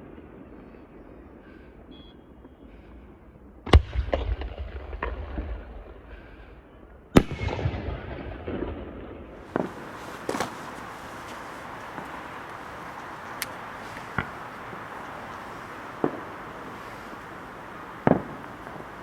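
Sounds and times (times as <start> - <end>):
crackling firework pops: 9.4 - 19.0
firework shells banging: 9.4 - 19.0.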